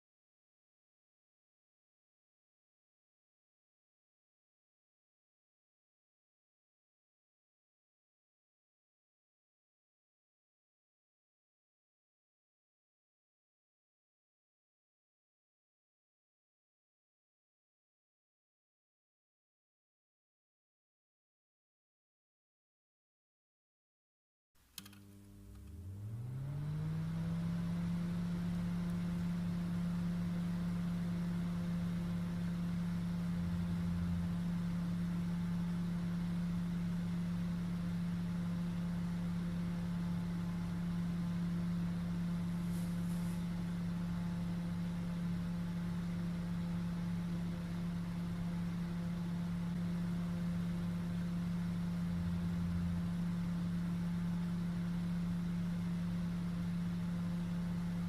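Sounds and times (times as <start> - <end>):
electric fan humming: 24.6 - 58.0.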